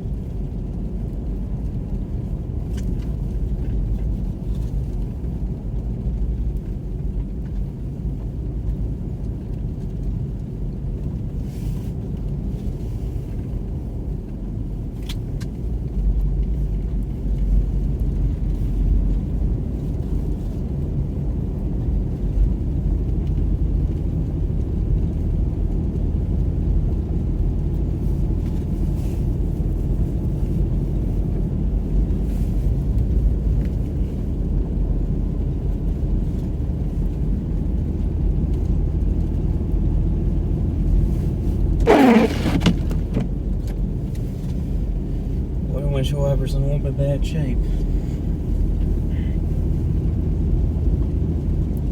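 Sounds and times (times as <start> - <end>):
car tyres and engine rumble: 0.0 - 51.9.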